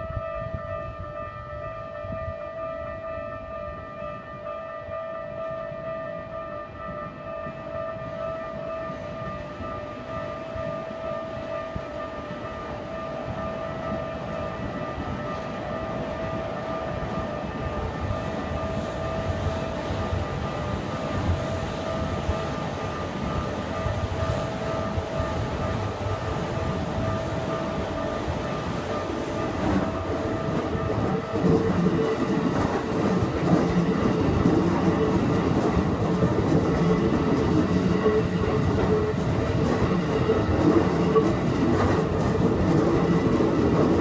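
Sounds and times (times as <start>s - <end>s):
approaching train rumble: 0.0s - 44.0s
level crossing warning bell: 0.0s - 44.0s.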